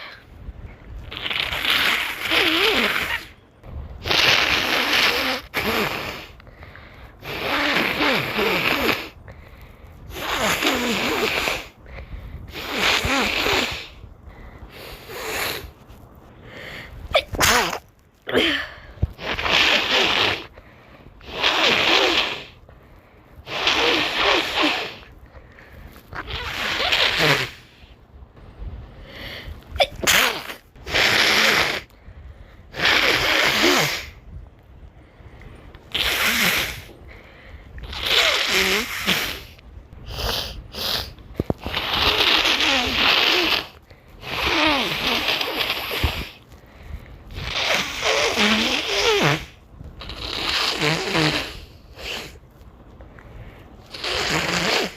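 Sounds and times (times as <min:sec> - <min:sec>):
person sneezing: 0:17.1 - 0:20.5, 0:29.7 - 0:31.9.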